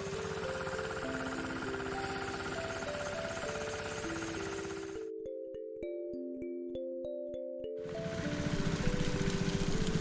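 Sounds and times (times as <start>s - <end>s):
small engine running steadily: 0.0s - 5.1s, 7.8s - 10.0s
background music with mallet notes: 0.0s - 10.0s.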